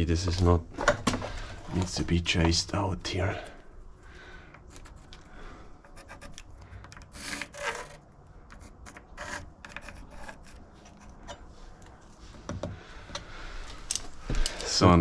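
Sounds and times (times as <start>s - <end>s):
chisel scraping wood: 4.7s - 5.2s, 5.8s - 11.5s.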